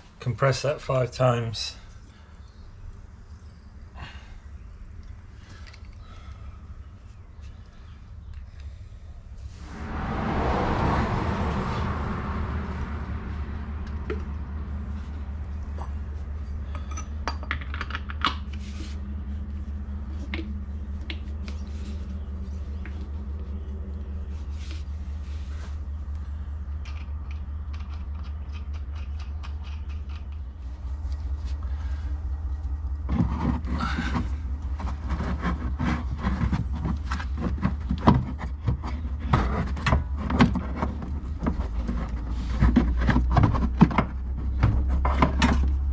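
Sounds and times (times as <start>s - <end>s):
steady low hum: 0.0s - 45.9s.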